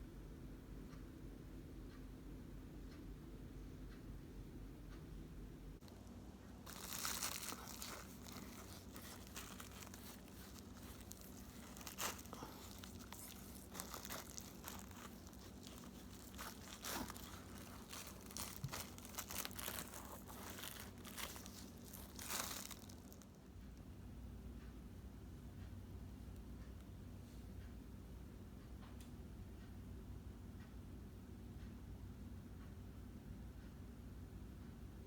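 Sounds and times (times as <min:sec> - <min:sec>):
crinkling and rustling: 0:05.8 - 0:23.4.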